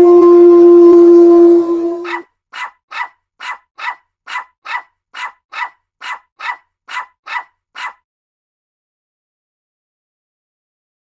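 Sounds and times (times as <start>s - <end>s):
dog barking: 2.0s - 8.0s.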